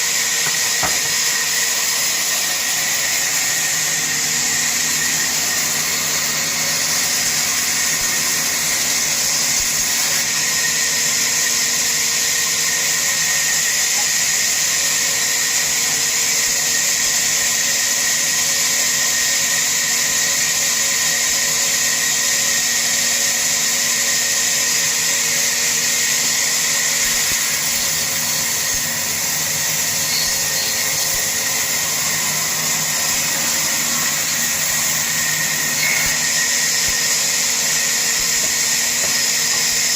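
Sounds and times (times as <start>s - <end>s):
power tool cutting wood: 0.0s - 39.9s.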